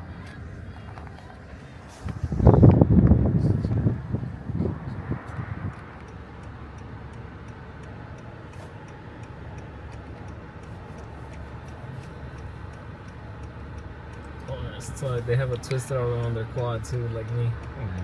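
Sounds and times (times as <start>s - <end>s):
vehicle hum from inside cab: 0.0s - 18.0s
faint even ticking: 5.7s - 18.0s.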